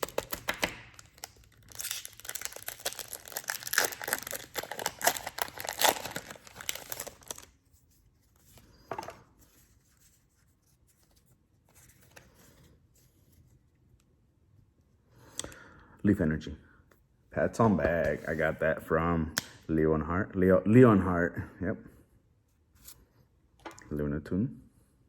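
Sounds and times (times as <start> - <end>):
cards rustling: 0.0 - 7.6
wrapper tearing and crinkling: 0.0 - 7.6.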